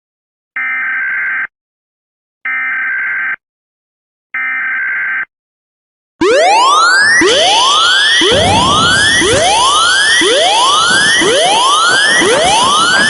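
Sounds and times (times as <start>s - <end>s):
loud rising sweep tones: 7.4s - 12.7s.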